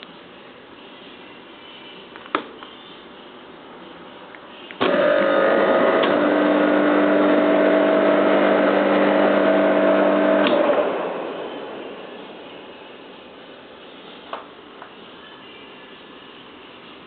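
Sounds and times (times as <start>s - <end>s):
air compressor humming: 4.8s - 15.1s.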